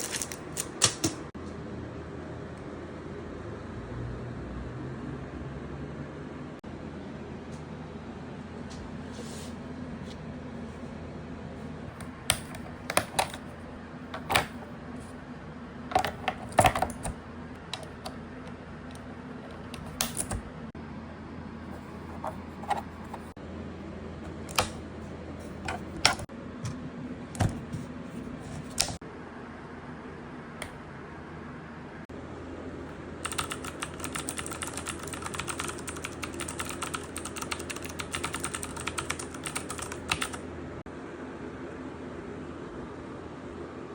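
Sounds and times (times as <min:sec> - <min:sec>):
steady low hum: 0:00.0 - 0:43.9
mechanical keyboard clicks: 0:24.4 - 0:24.8, 0:33.2 - 0:40.4.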